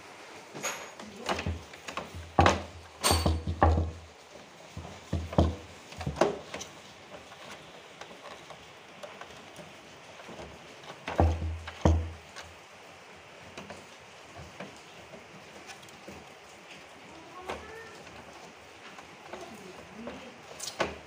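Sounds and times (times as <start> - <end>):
faint background noise: 0.0 - 21.0
sharp knocks and clunks: 0.6 - 6.7, 10.9 - 12.6.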